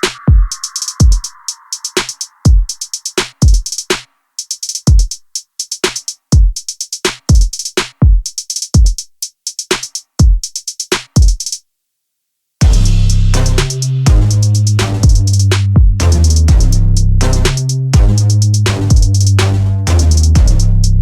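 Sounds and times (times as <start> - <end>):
deep kick drums: 0.0 - 1.3, 2.5 - 2.8, 7.3 - 9.0, 12.6 - 21.0
electronic music: 0.0 - 3.8, 12.6 - 21.0
hi-hats: 0.0 - 11.6, 12.6 - 21.0.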